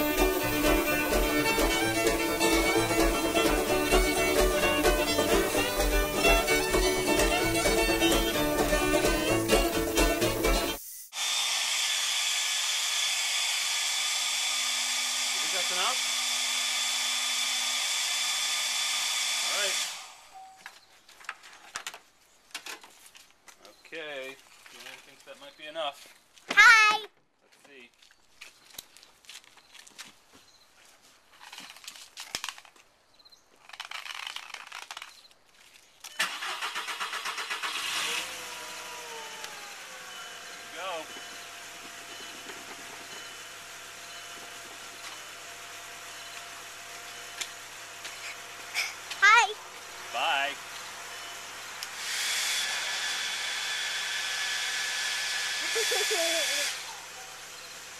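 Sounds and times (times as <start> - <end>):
hair dryer running: 0.0 - 9.0, 10.6 - 20.3, 36.7 - 57.9
fiddle and banjo music: 0.0 - 10.8
car starter cranking: 36.2 - 43.4
car engine running: 37.0 - 51.8.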